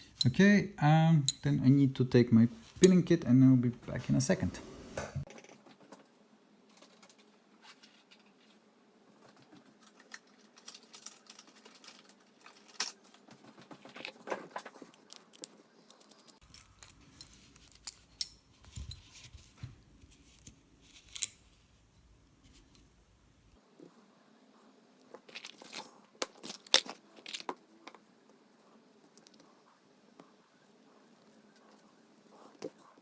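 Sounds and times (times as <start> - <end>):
metal lock parts clicking: 15.0 - 18.4.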